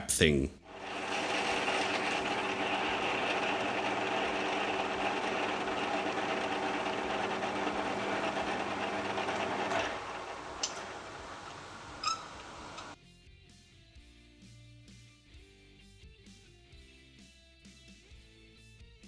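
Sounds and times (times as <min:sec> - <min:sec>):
metal lathe running: 0:00.7 - 0:13.0.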